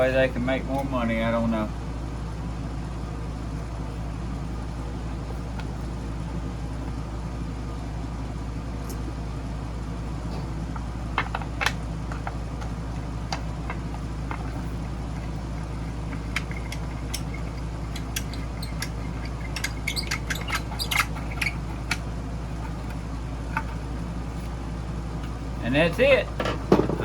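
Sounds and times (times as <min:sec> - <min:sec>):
air pump humming: 0:10.2 - 0:27.0.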